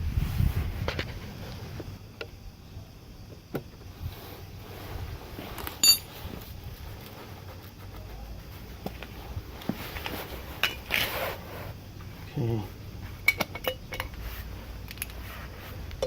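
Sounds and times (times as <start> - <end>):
low background hiss: 0.0 - 16.0
ringing metallic clink: 5.8 - 6.1.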